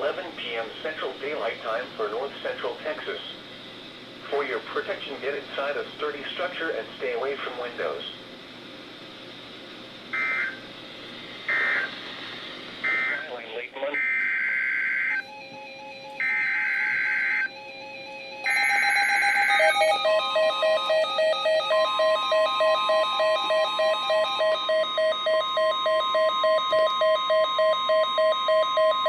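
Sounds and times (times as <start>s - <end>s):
steady high alarm tone: 10.1s - 10.7s, 11.4s - 12.0s, 12.8s - 29.0s
rapidly pulsing alert tone: 14.0s - 25.7s.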